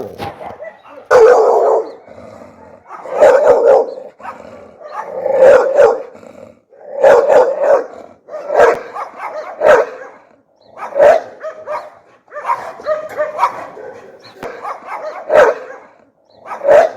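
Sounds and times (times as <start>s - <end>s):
dog barking fiercely: 0.0s - 16.9s.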